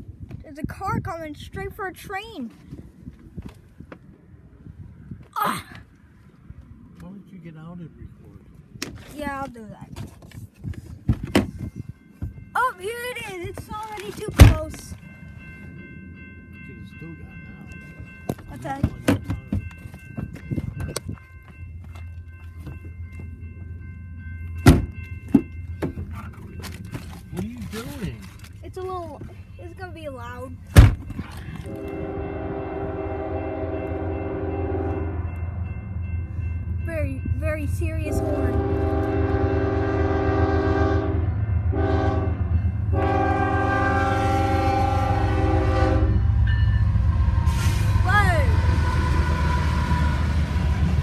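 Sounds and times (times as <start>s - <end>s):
car door thunking: 24.6s - 25.0s, 30.7s - 31.1s
low rumble: 30.6s - 51.0s
locomotive air horn: 31.5s - 35.3s, 38.1s - 46.4s.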